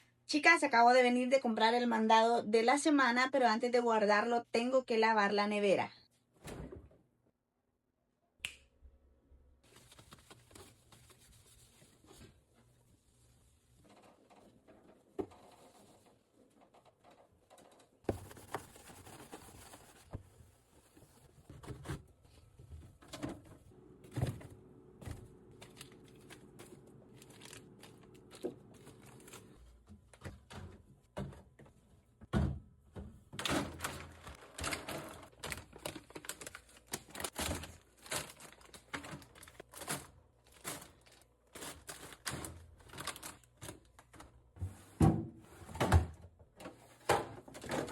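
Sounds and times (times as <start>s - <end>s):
groceries and fridge shelves clunking: 21.1s - 47.9s.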